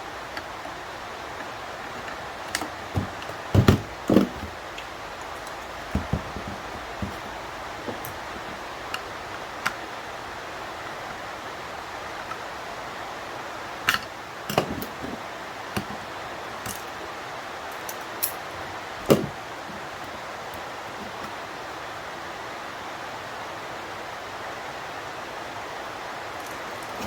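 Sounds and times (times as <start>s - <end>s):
steady hiss: 0.0s - 27.0s.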